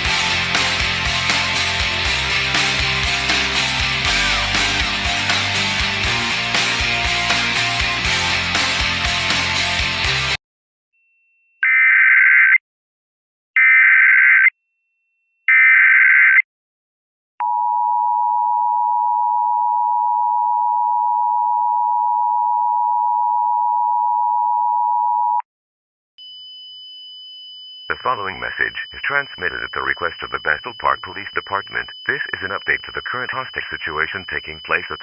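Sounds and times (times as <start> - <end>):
data bursts: 27.9 - 35.0.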